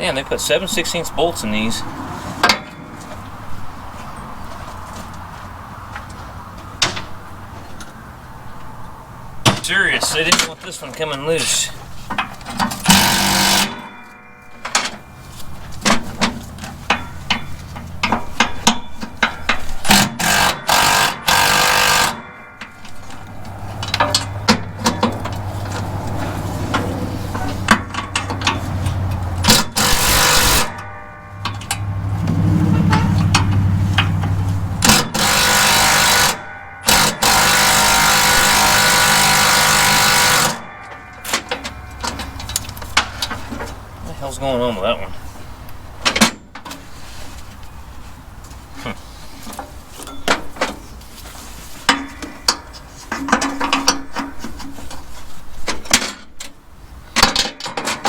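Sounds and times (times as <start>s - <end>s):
impact wrench hammering: 12.6s - 13.9s, 18.0s - 40.7s
steady low hum: 22.2s - 44.2s.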